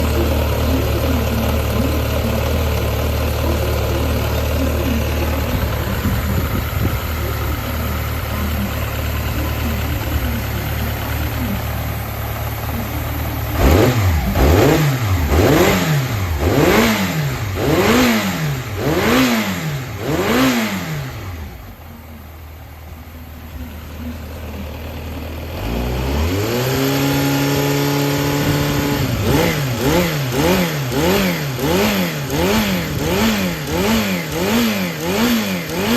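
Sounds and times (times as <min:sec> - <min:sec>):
motorcycle engine revving: 0:00.0 - 0:35.9.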